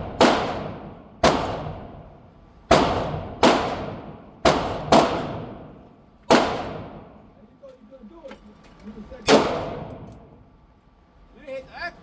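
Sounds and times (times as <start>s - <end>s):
gunshots with echo: 0.0s - 1.9s, 2.7s - 5.7s, 6.3s - 7.1s.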